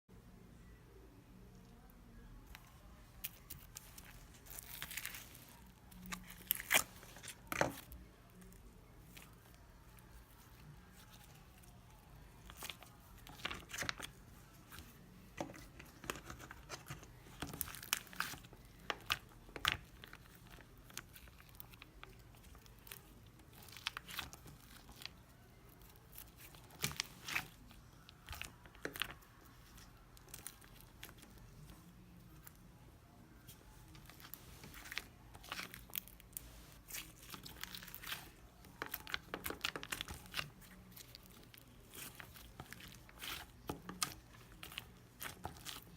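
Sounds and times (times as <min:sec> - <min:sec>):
slime being squished: 0:34.0 - 0:45.9.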